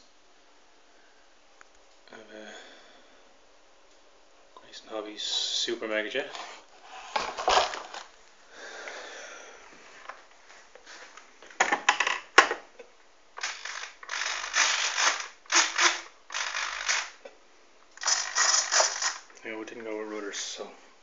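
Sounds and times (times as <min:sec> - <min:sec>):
ratchet-like rattling: 0:13.4 - 0:17.2, 0:18.0 - 0:19.3.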